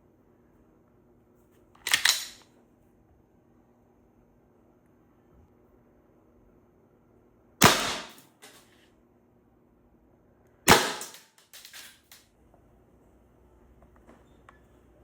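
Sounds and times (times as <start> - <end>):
gun handling clicks: 1.8 - 2.5, 11.0 - 12.2
air pistol shots: 7.6 - 8.6, 10.7 - 12.2.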